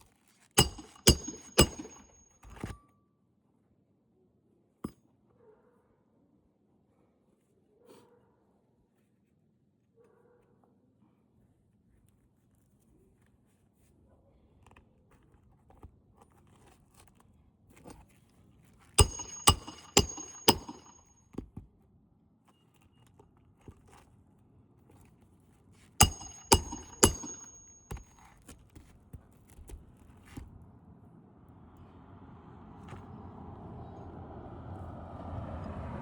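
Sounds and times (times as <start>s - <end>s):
sharp metallic strikes: 0.6s - 2.2s, 19.0s - 21.1s, 26.0s - 28.0s
handling clatter: 0.6s - 2.7s, 19.0s - 21.2s, 26.0s - 28.2s.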